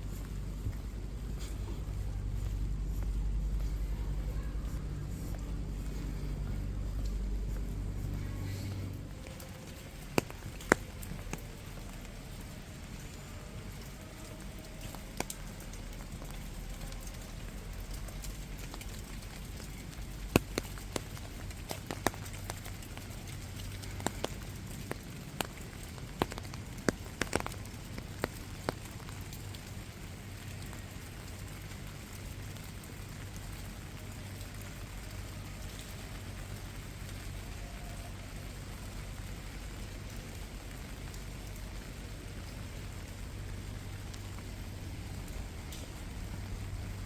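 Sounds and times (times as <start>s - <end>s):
low hum: 0.0s - 14.8s
rain falling: 0.0s - 47.0s
water drips and taps: 0.1s - 47.0s.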